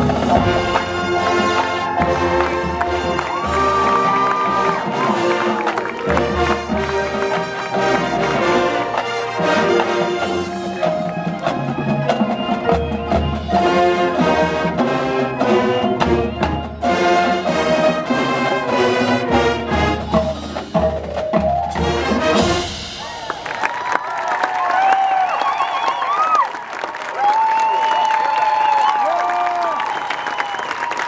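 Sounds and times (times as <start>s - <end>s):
crowd cheering and whistling: 0.0s - 21.0s, 22.0s - 31.0s
marching band playing: 0.0s - 24.2s.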